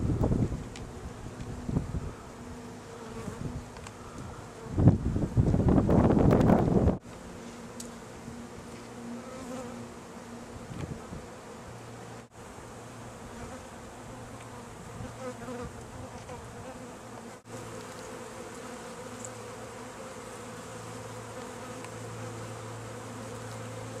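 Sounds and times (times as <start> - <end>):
honeybees buzzing: 0.0 - 24.0.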